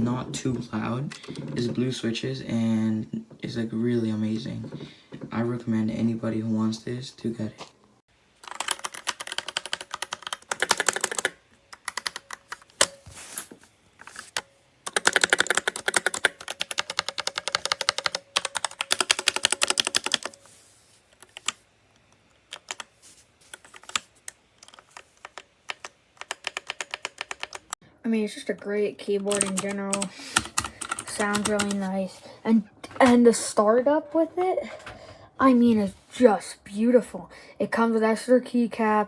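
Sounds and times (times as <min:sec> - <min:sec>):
mechanical keyboard keys clicking: 0:01.1 - 0:01.8, 0:08.4 - 0:13.0, 0:14.9 - 0:20.4, 0:22.4 - 0:22.9, 0:23.5 - 0:27.8, 0:29.2 - 0:31.8.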